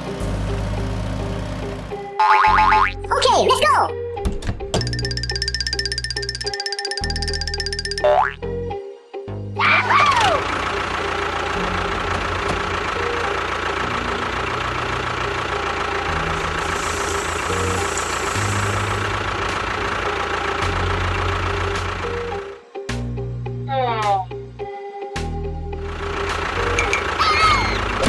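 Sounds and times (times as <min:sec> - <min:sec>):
engine droning: 0:00.0 - 0:03.1, 0:09.7 - 0:22.7, 0:25.6 - 0:28.0.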